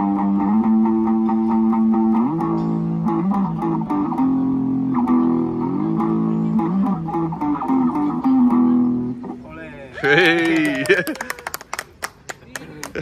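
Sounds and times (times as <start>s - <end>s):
amplified guitar melody: 0.0s - 9.6s.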